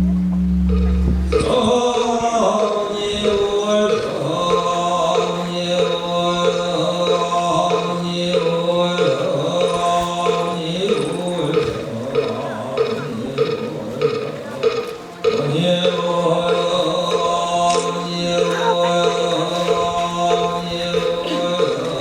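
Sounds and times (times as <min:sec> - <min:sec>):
loud deep hum: 0:00.0 - 0:14.6
low drone: 0:00.0 - 0:22.0
rhythmic chanting: 0:00.0 - 0:22.0.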